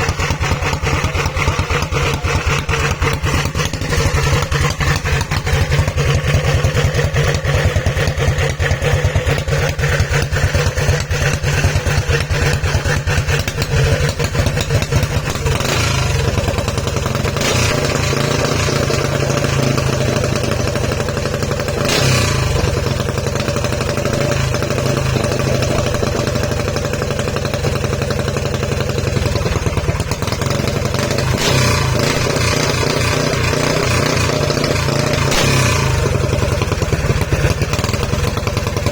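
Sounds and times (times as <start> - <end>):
engine running with rapid pulses: 0.0 - 38.9.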